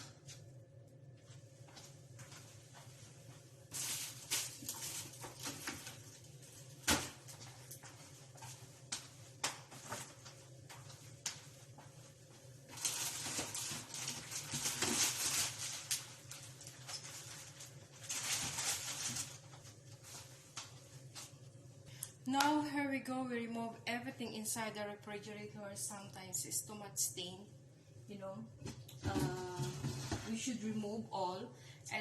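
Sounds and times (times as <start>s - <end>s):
package rustling: 3.8s - 6.1s, 12.7s - 20.3s.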